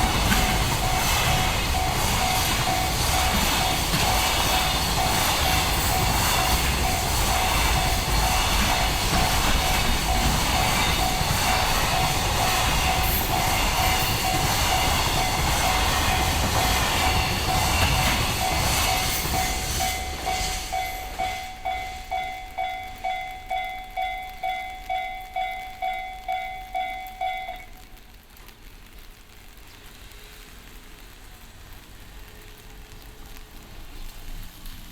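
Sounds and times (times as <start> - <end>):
level crossing alarm dinging: 0.0 - 4.1, 4.9 - 27.8
freight train wagons rolling: 0.0 - 28.8.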